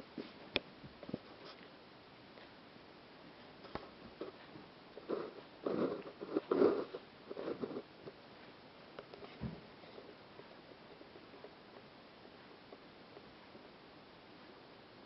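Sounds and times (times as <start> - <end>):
cats scuffling and pawing: 9.0 - 10.5.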